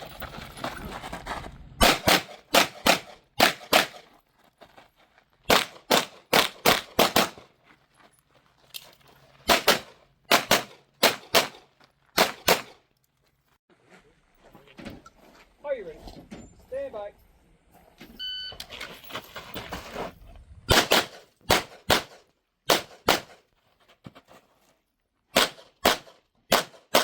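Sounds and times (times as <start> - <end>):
pistol shots: 1.8 - 4.1, 5.5 - 7.4, 9.5 - 11.6, 12.2 - 12.8, 20.7 - 23.4, 25.4 - 27.0.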